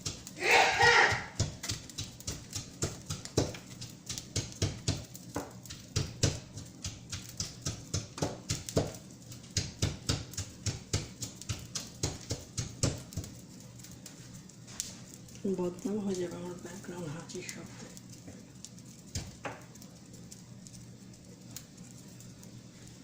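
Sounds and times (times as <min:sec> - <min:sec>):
pestle pounding in a mortar: 0:00.0 - 0:13.4.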